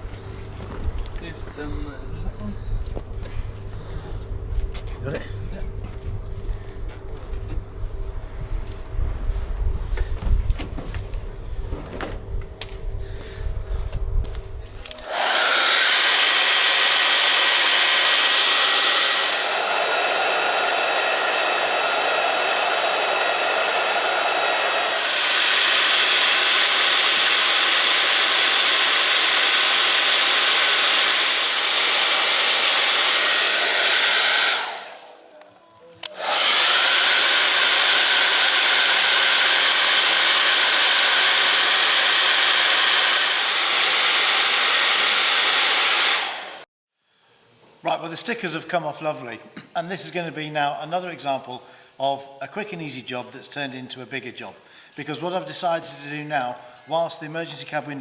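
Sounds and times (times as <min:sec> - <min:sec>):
hot-air blower running: 0:00.0 - 0:35.4, 0:36.0 - 0:46.7.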